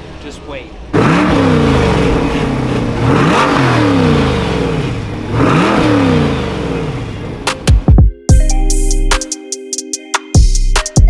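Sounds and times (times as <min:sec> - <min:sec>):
car engine revving: 0:00.0 - 0:07.9.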